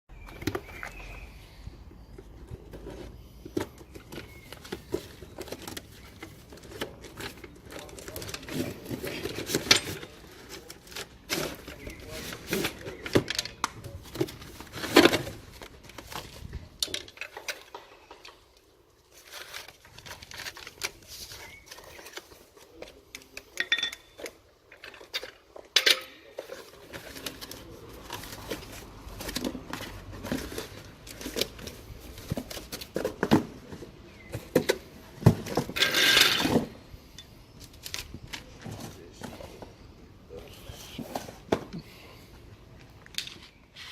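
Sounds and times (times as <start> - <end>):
metal tools clinking and rattling: 7.1 - 10.6, 23.4 - 27.4, 35.6 - 37.4.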